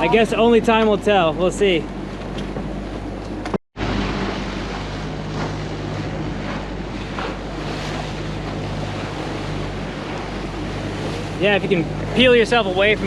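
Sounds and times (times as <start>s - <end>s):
boat engine humming: 0.0s - 13.0s
waves splashing along hull: 0.0s - 13.0s.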